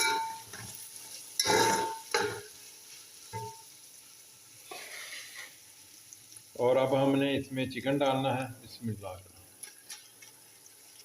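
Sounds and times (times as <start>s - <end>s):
spatula scraping pan: 0.0s - 2.5s, 4.7s - 5.6s
food sizzling in hot oil: 0.0s - 11.0s.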